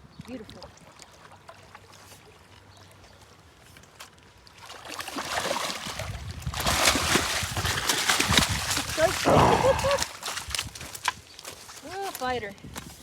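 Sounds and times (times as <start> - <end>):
fish thrashing and splashing water: 4.5 - 11.1.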